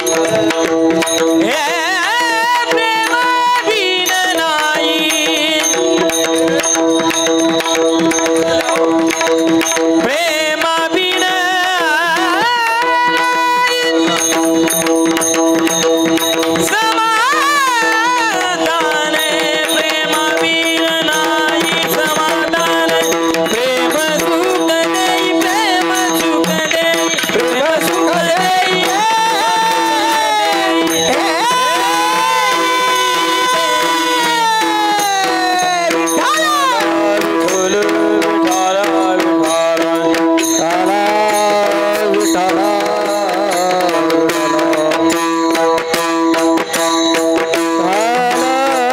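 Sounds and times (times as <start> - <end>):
hand drum playing: 0.0 - 48.9
high solo voice singing: 1.4 - 6.6, 10.0 - 14.2, 16.6 - 45.2
held drone tone: 25.9 - 37.6.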